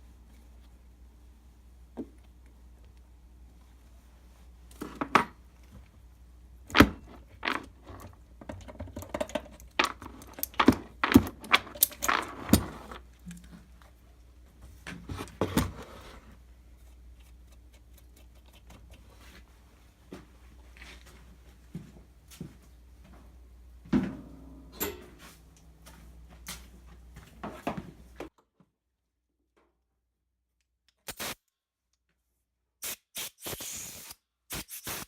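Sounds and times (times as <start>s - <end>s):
metal tools clinking on workbench: 24.8s - 25.2s.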